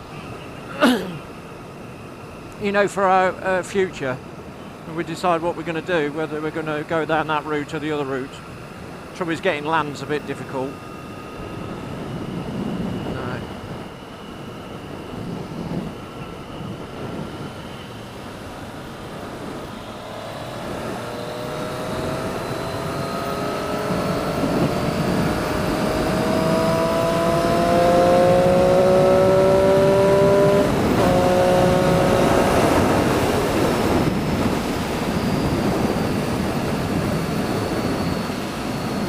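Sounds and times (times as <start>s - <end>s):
motorcycle engine accelerating: 17.8s - 39.0s.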